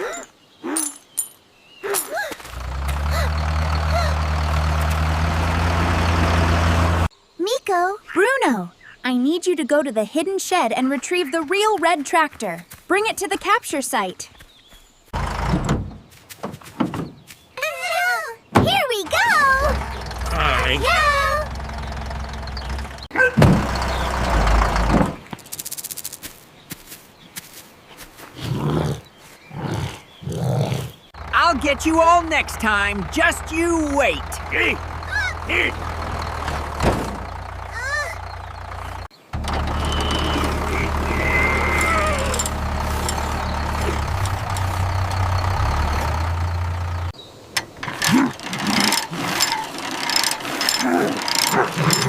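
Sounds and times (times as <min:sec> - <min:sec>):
cartoon tractor engine idling: 0:02.5 - 0:07.1, 0:15.2 - 0:15.9, 0:18.6 - 0:25.2, 0:31.2 - 0:52.0
voice-like noises: 0:18.7 - 0:21.5, 0:31.4 - 0:35.8.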